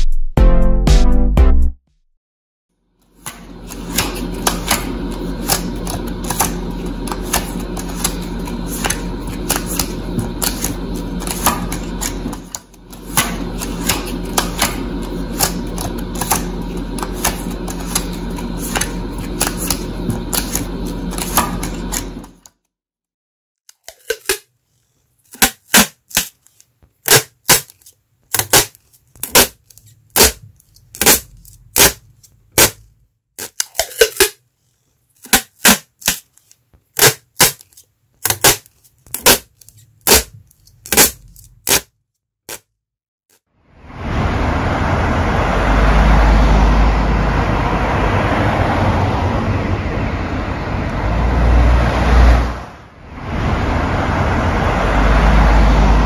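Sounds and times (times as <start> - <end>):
steady hum: 3.0 - 22.5, 43.8 - 56.0.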